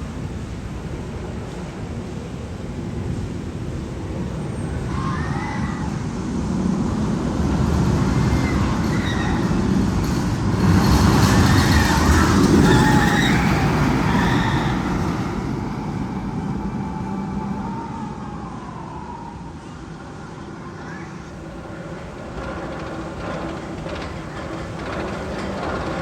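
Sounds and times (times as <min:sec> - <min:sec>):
roller coaster rumbling on track: 0:00.0 - 0:26.0
high wavering squeals: 0:07.5 - 0:19.7.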